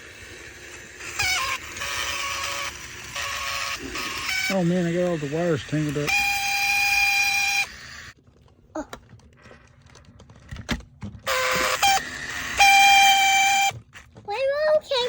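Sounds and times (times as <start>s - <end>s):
rattling buzz: 0.0s - 8.2s, 11.2s - 14.1s.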